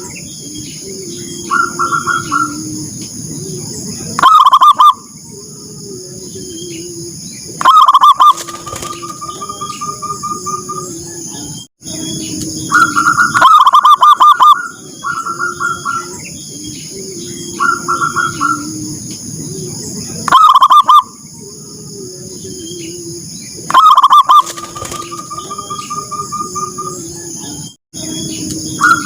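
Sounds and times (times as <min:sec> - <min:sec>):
doves cooing: 0:00.0 - 0:29.0.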